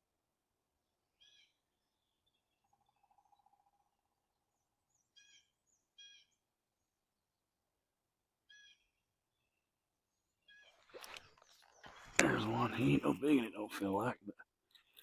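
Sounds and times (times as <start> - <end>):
faint bird calls: 1.2 - 6.5, 8.4 - 9.6, 10.4 - 13.2.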